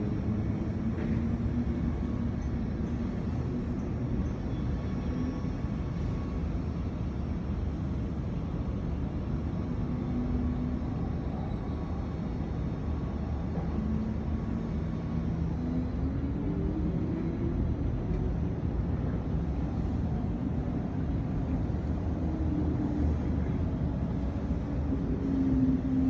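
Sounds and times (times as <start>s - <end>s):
faint engine hum: 0.0s - 26.0s
vehicle engines rumbling: 0.0s - 26.0s.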